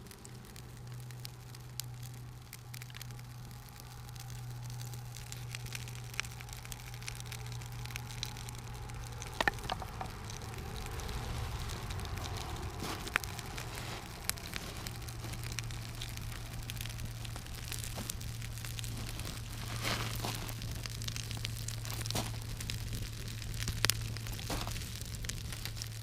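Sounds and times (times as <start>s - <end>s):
campfire crackling and popping: 0.0s - 26.0s
steady low hum: 0.0s - 26.0s.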